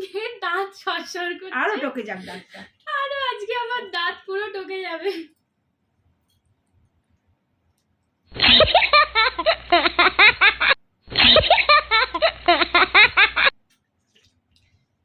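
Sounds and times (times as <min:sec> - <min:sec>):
rapid giggling: 0:08.4 - 0:13.5.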